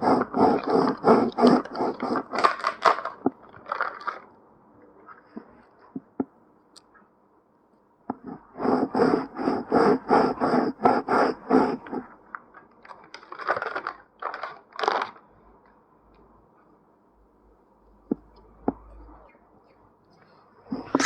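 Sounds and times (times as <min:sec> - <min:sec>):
tool scratching at ear: 0:00.0 - 0:02.4, 0:08.2 - 0:12.1.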